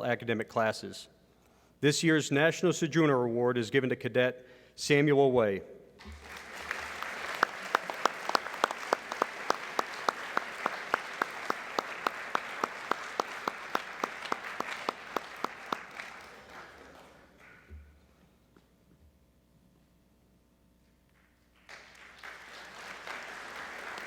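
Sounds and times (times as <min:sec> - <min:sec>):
audience applauding: 0:06.1 - 0:17.7, 0:21.6 - 0:24.0.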